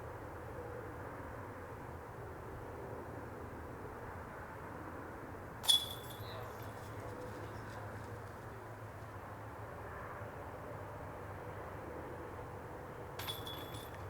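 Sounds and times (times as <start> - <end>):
low outdoor hum: 0.0 - 14.0
disc striking metal basket: 5.6 - 6.8, 13.2 - 14.0.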